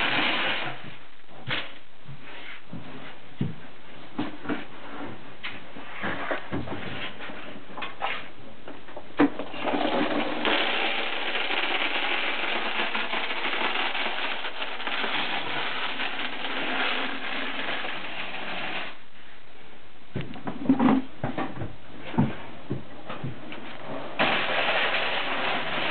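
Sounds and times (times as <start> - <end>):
stones pouring and clattering: 9.4 - 19.0, 24.2 - 25.9.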